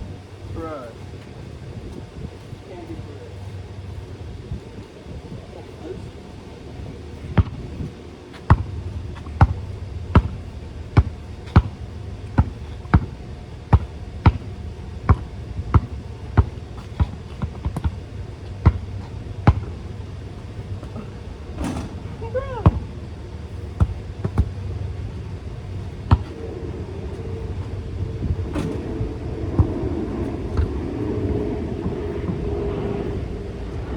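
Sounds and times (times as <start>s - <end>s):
basketball bouncing: 7.4s - 31.2s.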